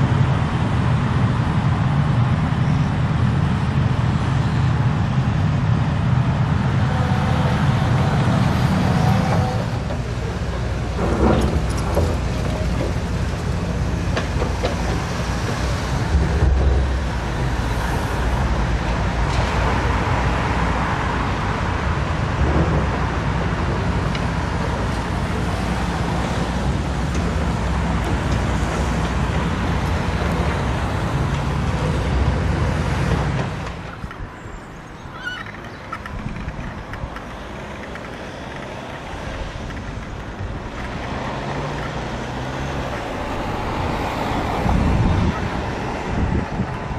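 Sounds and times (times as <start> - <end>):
diesel engine rumbling: 0.0 - 46.9
knocks and clatter: 9.2 - 20.2, 22.2 - 34.2.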